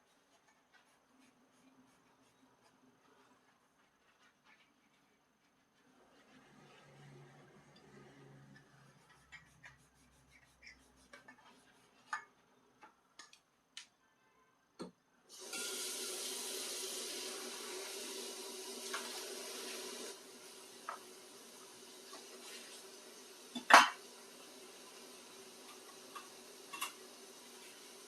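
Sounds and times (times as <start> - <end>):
tap water running into sink: 15.3 - 28.0
dishes clinking at a sink: 23.5 - 24.1, 25.6 - 27.1.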